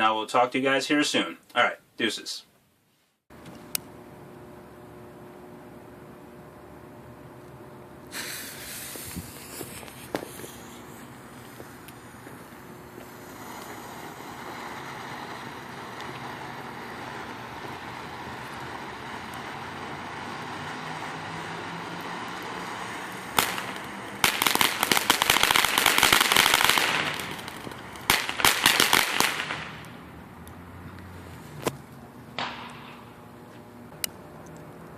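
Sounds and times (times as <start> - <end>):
firework hissing: 8.0 - 33.2
firework sharp crack: 8.1 - 30.1, 31.6 - 33.3
firework rapid crackling: 8.1 - 30.2, 31.0 - 33.3.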